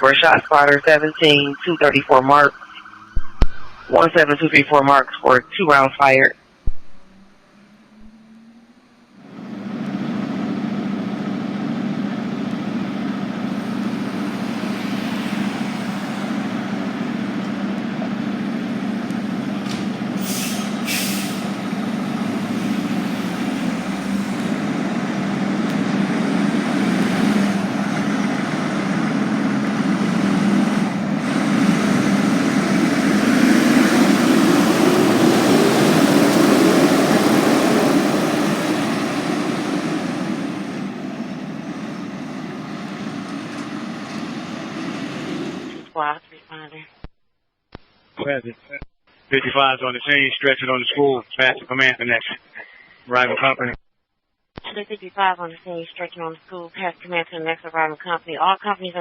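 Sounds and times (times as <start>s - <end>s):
truck engine running: 6.5s - 45.9s
short air hisses: 20.2s - 21.6s.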